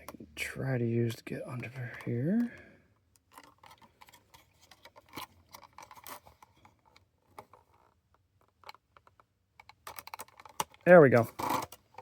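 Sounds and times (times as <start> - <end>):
plastic prying clicks and scrapes: 1.9 - 12.0.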